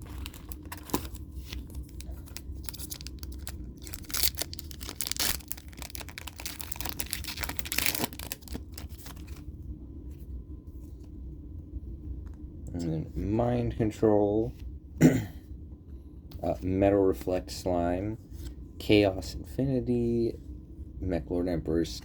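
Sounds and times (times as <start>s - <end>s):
foil wrapper tearing and crinkling: 0.0s - 9.4s.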